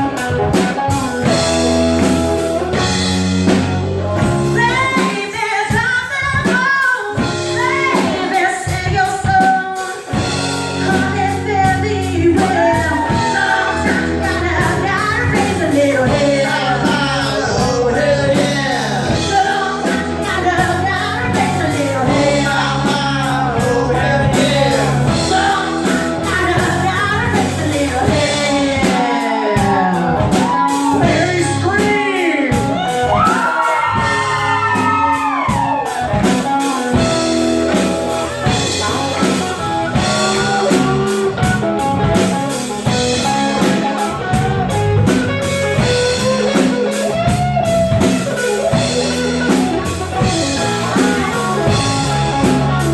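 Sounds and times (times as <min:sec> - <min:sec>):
bending electric guitar notes: 0:00.0 - 0:05.0, 0:10.1 - 0:52.9
blues-rock band playing: 0:00.0 - 0:52.9
person singing: 0:04.5 - 0:42.2.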